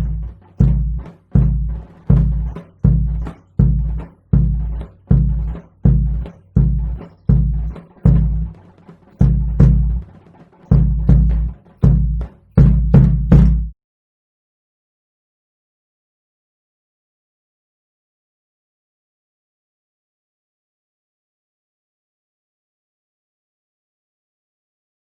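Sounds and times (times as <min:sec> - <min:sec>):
heavy low drum strokes: 0:00.0 - 0:13.7.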